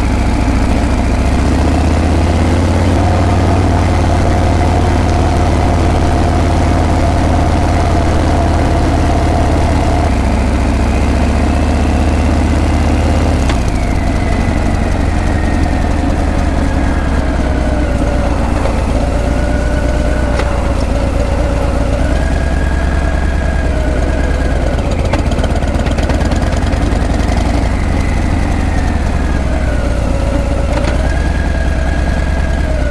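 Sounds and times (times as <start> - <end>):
motorcycle engine rumbling: 0.0 - 32.9
thin wavering whine: 13.8 - 24.6.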